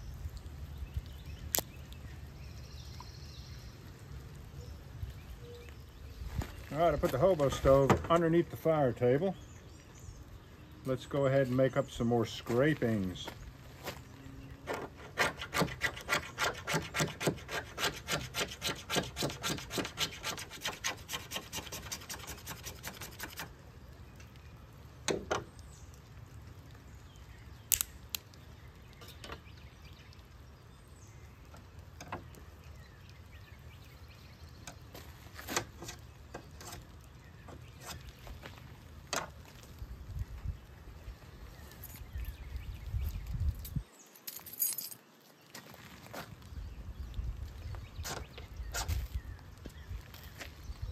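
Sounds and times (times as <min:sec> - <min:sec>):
knife scraping wood: 0:14.6 - 0:23.5, 0:35.4 - 0:36.9.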